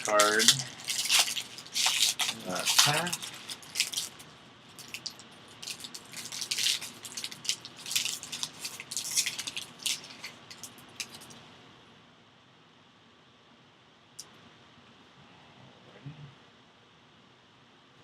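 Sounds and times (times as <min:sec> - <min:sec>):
plastic wrapper crinkling: 0:00.0 - 0:11.4.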